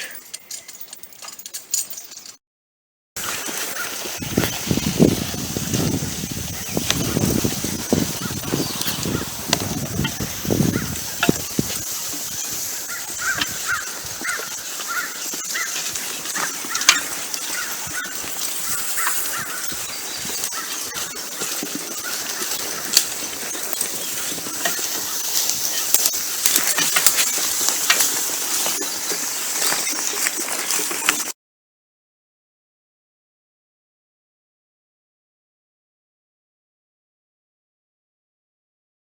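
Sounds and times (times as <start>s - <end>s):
horses browsing on brush: 0.0s - 2.3s, 3.2s - 31.3s
twigs snapping and crunching: 6.8s - 28.7s.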